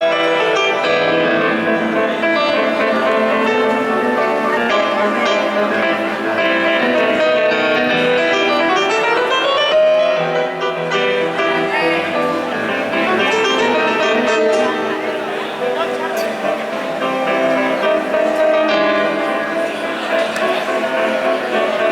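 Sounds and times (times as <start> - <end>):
piano music: 0.0 - 21.9.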